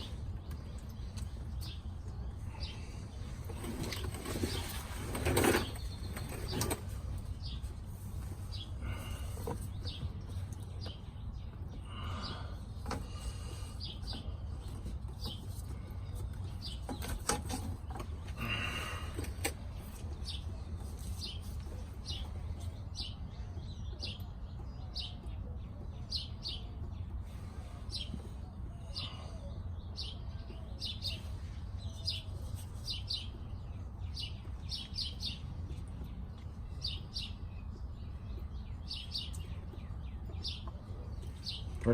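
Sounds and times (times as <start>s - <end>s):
small birds chirping: 0.0s - 41.9s.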